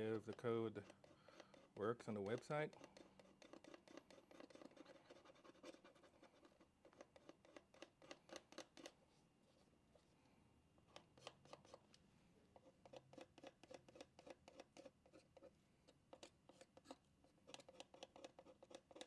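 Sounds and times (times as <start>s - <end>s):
scratching a scratch-off sticker: 0.0s - 9.0s, 12.6s - 15.5s, 16.1s - 19.0s.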